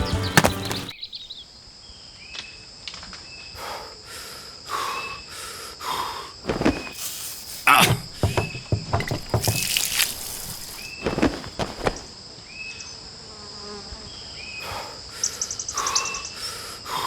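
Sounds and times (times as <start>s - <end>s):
sharp knocks and clicks: 7.8s - 10.1s
insect chirring: 14.6s - 17.0s.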